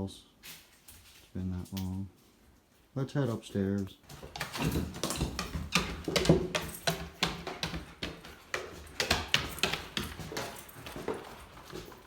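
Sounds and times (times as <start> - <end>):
footsteps on wooden stairs: 4.0 - 12.0.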